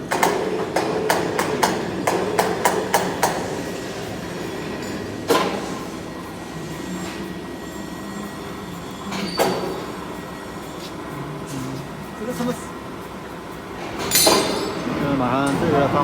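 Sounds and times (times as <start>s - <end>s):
workshop hum: 0.0s - 16.0s
hammer striking metal: 0.1s - 3.8s, 4.4s - 5.9s, 13.8s - 15.0s.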